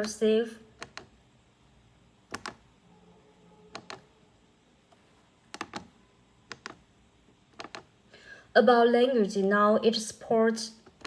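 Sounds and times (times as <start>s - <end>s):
keypad button clicks: 0.8s - 1.1s, 2.3s - 2.6s, 3.7s - 4.1s, 5.5s - 5.9s, 6.5s - 6.8s, 7.6s - 7.9s.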